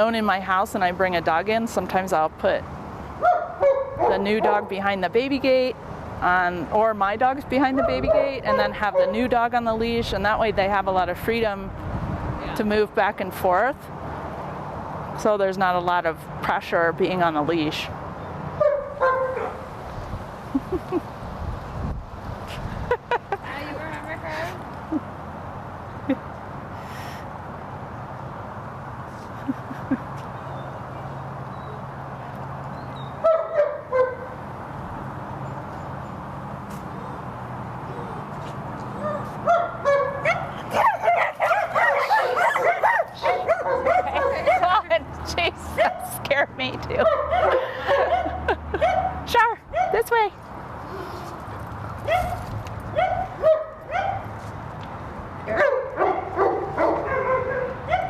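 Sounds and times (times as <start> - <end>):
dog barking: 3.2 - 4.7, 7.8 - 9.2, 18.6 - 19.6, 33.2 - 34.2, 39.0 - 44.8, 47.0 - 49.2, 49.8 - 50.0, 53.0 - 54.3, 55.6 - 58.0.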